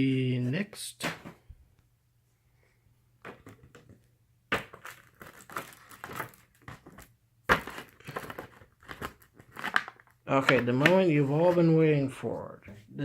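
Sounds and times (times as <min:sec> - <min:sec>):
paper packaging crinkling: 0:04.6 - 0:10.5.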